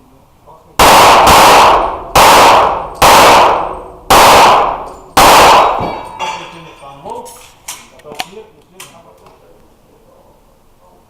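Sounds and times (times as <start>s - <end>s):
pistol gunshots echoing: 0.8s - 6.2s.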